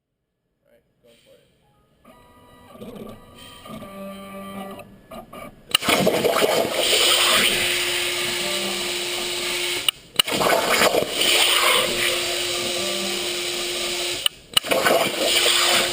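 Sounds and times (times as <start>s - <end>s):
motors whirring: 5.7s - 15.9s
plasma arc hissing: 5.8s - 15.9s.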